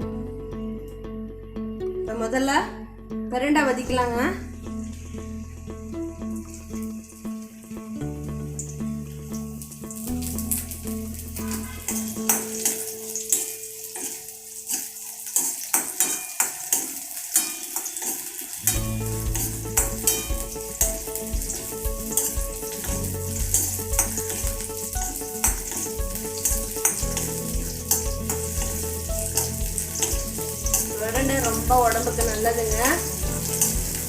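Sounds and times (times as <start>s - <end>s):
stems sizzling in hot oil: 3.9s - 34.0s
spatula scraping pan: 25.5s - 34.0s.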